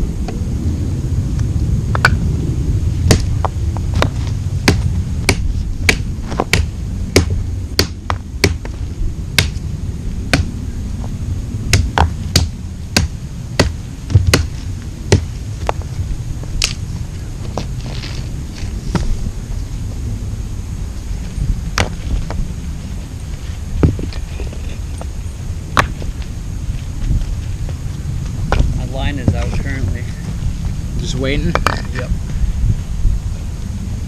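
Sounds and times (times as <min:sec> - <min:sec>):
wind on microphone: 0:00.0 - 0:34.0
stones clacking together: 0:31.5 - 0:32.1.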